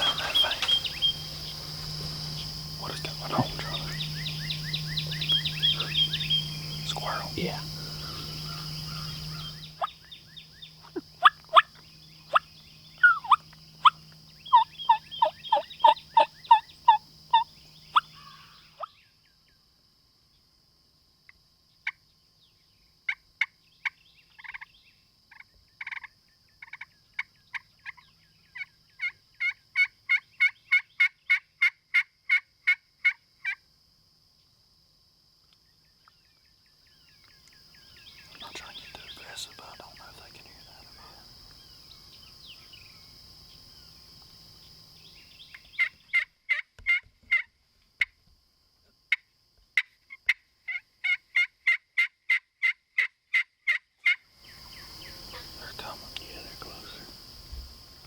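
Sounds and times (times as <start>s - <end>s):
turkey yelps: 13.0s - 17.5s.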